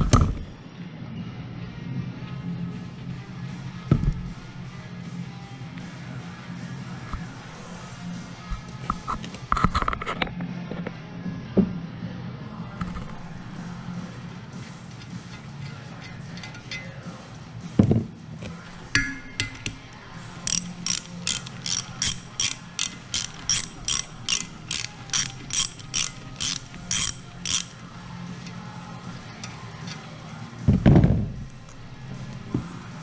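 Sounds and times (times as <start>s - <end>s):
ratchet wrench clicking: 18.5s - 28.6s.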